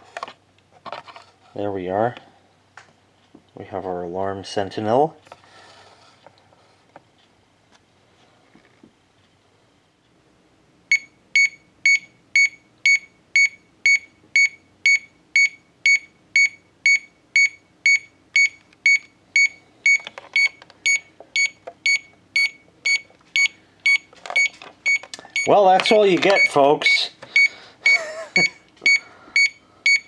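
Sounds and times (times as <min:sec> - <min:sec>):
high-pitched alarm clock beeps: 0:10.9 - 0:25.6, 0:26.3 - 0:26.6, 0:27.4 - 0:30.0.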